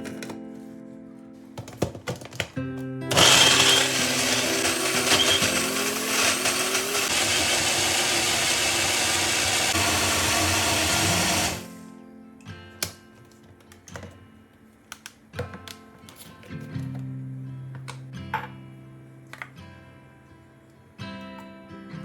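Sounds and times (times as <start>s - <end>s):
mixer grinder motor grinding: 3.1s - 11.8s.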